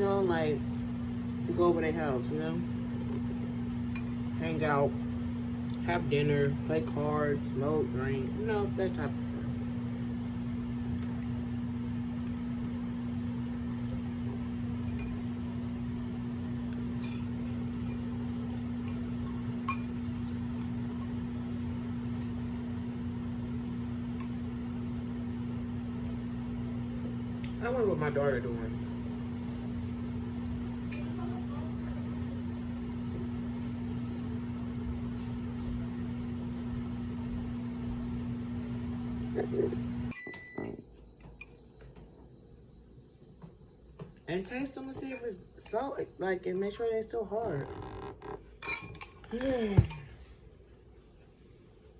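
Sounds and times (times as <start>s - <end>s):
electrical hum: 0.0s - 51.9s.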